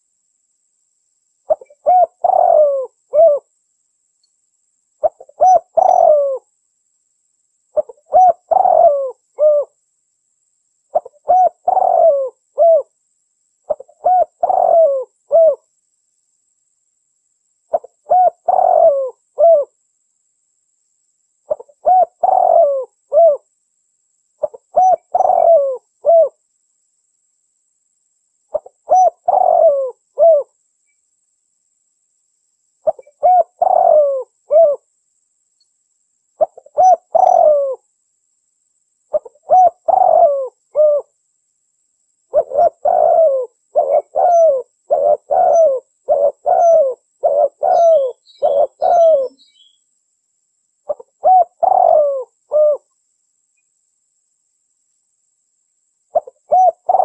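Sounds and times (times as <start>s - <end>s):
dove cooing: 1.5s - 3.5s, 5.0s - 6.5s, 7.8s - 9.8s, 10.9s - 12.9s, 13.7s - 15.6s, 17.7s - 19.8s, 21.5s - 23.4s, 24.4s - 26.4s, 28.5s - 30.6s, 32.8s - 34.9s, 36.4s - 37.8s, 39.1s - 41.1s, 42.3s - 49.7s, 50.9s - 52.9s, 56.1s - 57.0s.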